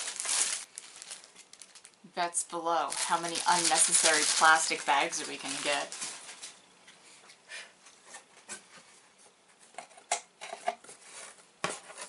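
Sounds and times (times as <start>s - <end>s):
packaging rustling and clicking: 0.0s - 2.0s, 2.9s - 6.6s.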